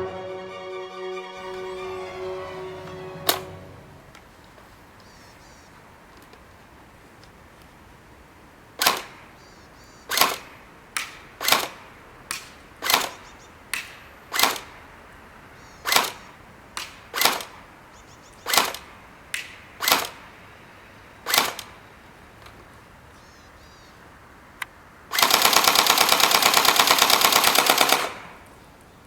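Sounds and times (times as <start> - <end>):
airsoft shotgun shots cracking: 8.8 - 9.4, 10.1 - 15.1, 15.8 - 17.8, 18.4 - 21.9, 25.1 - 28.5.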